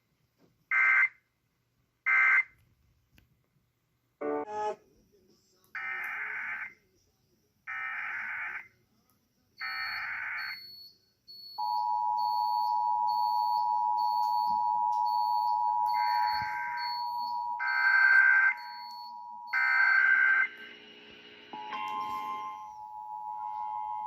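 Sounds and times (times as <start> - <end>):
two-tone attention signal: 4.2 - 4.8, 21.5 - 24.0
single steady tone: 21.5 - 24.0.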